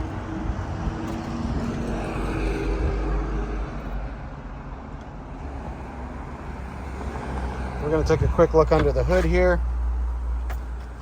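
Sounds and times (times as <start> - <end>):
traffic rumble: 0.0 - 11.0.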